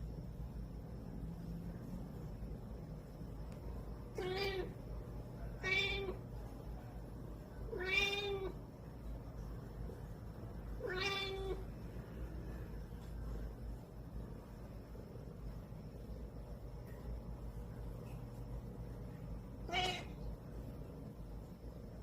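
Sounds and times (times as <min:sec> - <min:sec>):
cat meowing: 0:04.1 - 0:04.8, 0:05.6 - 0:06.2, 0:07.7 - 0:08.6, 0:10.8 - 0:11.6, 0:19.6 - 0:20.2.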